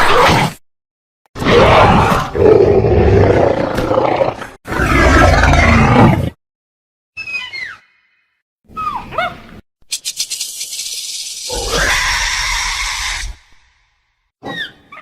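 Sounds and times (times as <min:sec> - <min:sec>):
dinosaur roars: 0:01.4 - 0:06.4, 0:11.5 - 0:13.8
short high sliding chirps: 0:09.9 - 0:13.3.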